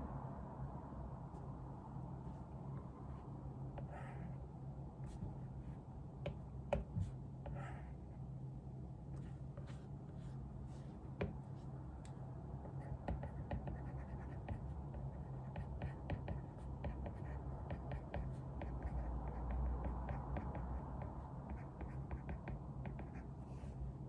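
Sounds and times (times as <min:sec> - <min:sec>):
steady low hum: 0:00.0 - 0:24.0
pen scratching on paper: 0:03.8 - 0:04.4, 0:06.8 - 0:08.0, 0:12.6 - 0:23.7.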